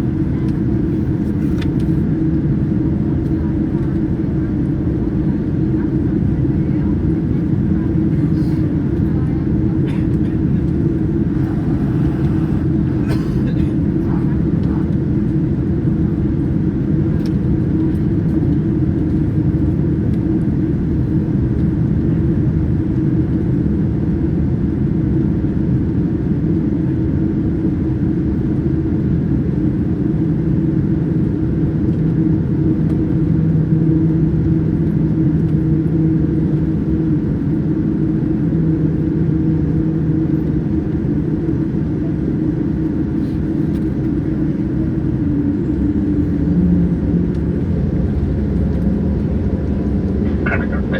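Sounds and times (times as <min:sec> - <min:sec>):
airplane cabin engine drone: 0:00.0 - 0:50.9
faint hum: 0:08.1 - 0:14.9, 0:43.2 - 0:50.9.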